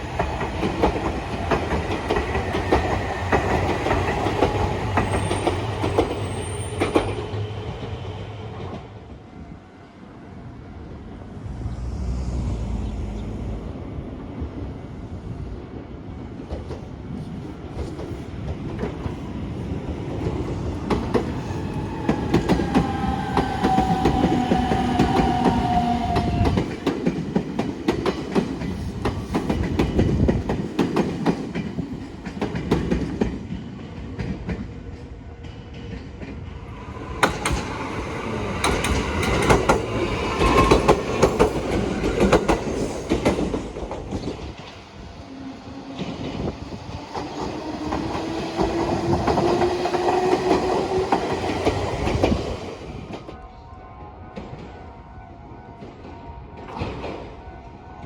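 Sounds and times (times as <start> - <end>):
train wheels clacking over rail joints: 37.1 - 45.0.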